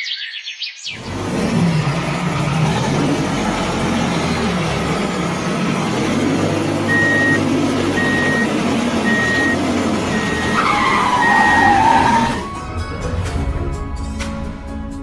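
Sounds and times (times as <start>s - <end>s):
vehicle engine running: 0.9s - 14.2s
reversing alarm beeping: 6.1s - 12.5s.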